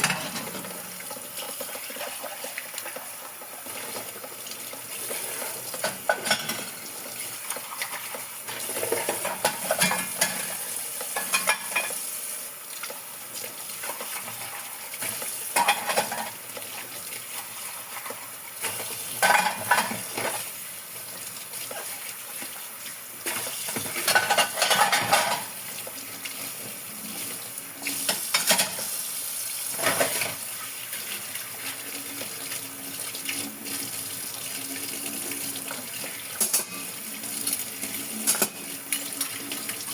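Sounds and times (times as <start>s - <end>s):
dishes and utensils clinking: 0.0s - 2.2s, 5.0s - 6.8s, 7.4s - 12.0s, 13.8s - 16.4s, 17.6s - 20.4s, 23.3s - 25.6s, 28.1s - 28.9s, 29.8s - 30.4s, 36.3s - 39.9s
water running and splashing: 0.0s - 39.9s.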